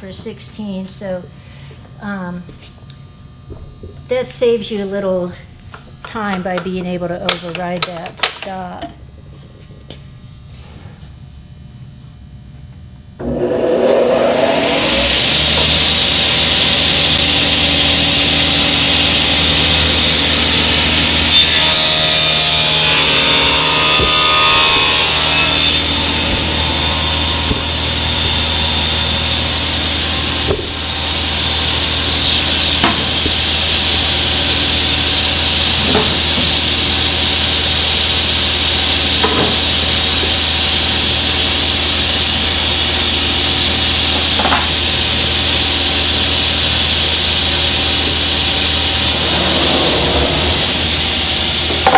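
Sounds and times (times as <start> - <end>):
saw blade cutting panel: 13.2 - 51.9
table saw running: 13.2 - 51.9.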